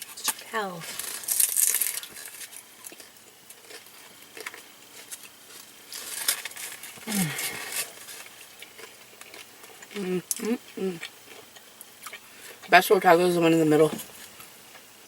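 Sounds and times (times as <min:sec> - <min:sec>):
crunchy food crackling: 0:00.0 - 0:15.0
person humming: 0:07.0 - 0:07.8, 0:10.0 - 0:11.0.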